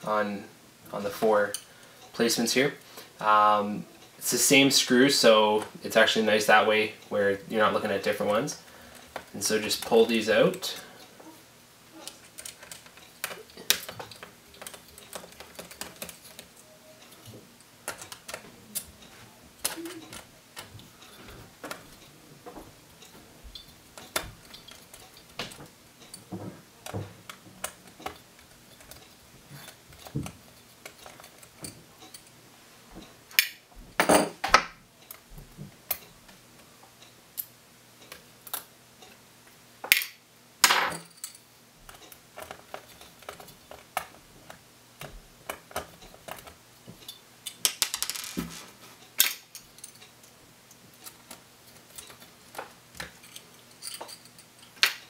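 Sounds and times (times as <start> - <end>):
screws and parts clattering: 12.1 - 16.6, 23.0 - 32.3, 45.5 - 50.3, 51.0 - 55.0.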